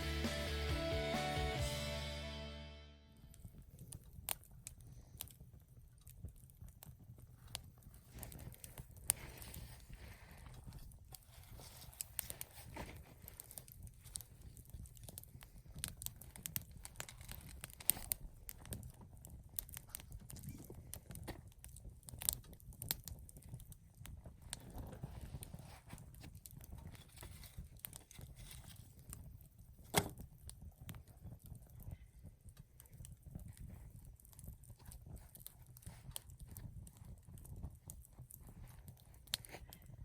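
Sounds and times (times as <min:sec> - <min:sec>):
campfire crackling and popping: 0:03.3 - 0:40.0.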